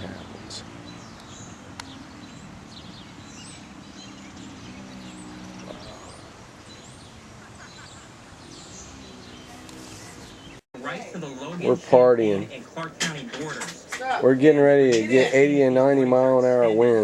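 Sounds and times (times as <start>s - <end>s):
birds chirping and calling: 0.0s - 17.0s.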